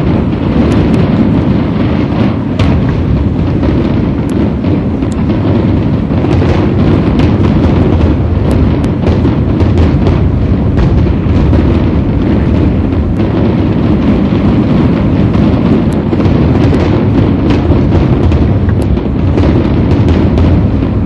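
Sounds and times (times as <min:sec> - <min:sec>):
fireworks booming: 0:00.0 - 0:21.0
sharp firework cracks and pops: 0:00.0 - 0:21.0.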